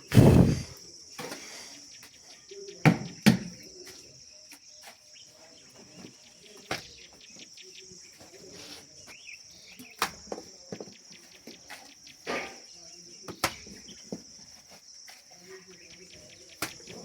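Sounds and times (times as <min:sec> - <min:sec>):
insect drone: 0:00.0 - 0:02.1.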